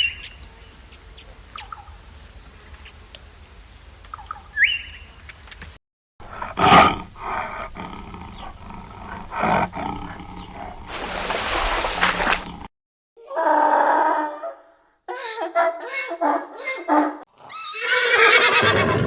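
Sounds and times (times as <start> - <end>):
bird chirps: 0.0 - 2.0, 4.1 - 5.3.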